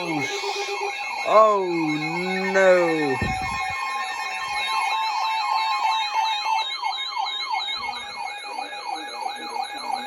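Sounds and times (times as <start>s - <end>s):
steady alert tones: 0.0s - 5.8s
high warbling alarm: 0.0s - 10.0s
siren-like wailing alarm: 0.0s - 10.0s.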